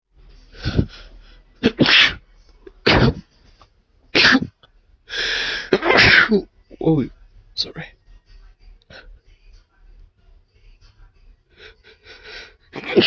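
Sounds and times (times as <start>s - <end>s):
person sneezing: 1.6s - 2.2s, 2.8s - 3.3s, 4.2s - 4.6s, 5.5s - 6.4s
breathy inhale: 5.1s - 5.8s, 11.5s - 12.6s.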